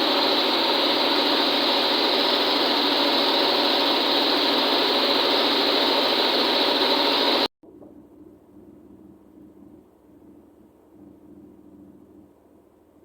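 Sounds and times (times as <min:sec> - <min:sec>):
motor whirring: 0:00.0 - 0:07.5
faint low hum: 0:07.6 - 0:13.0.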